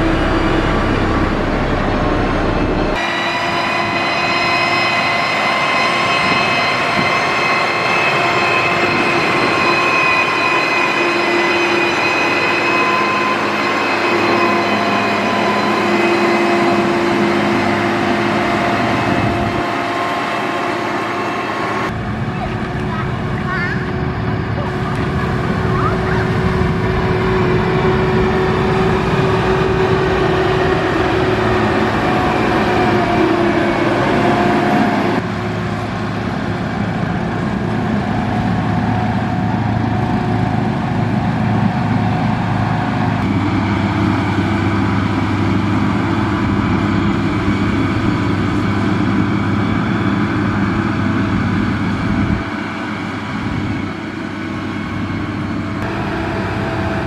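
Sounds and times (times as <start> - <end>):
heavy machinery diesel engines: 0.0 - 57.0.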